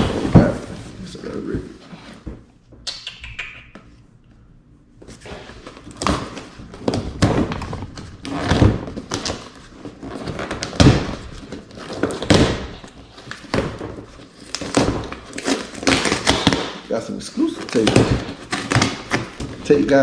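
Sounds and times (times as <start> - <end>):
packaging thumps and knocks: 5.6 - 16.9, 17.6 - 20.0.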